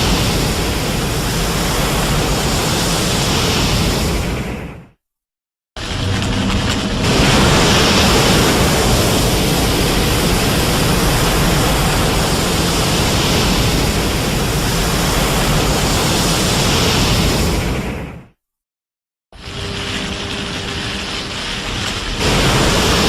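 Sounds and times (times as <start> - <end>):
loud rushing hiss: 0.0 - 4.8, 7.0 - 18.0, 19.4 - 23.0
deep rumble: 5.8 - 18.2, 19.4 - 23.0
low hum: 5.8 - 18.2, 19.4 - 23.0.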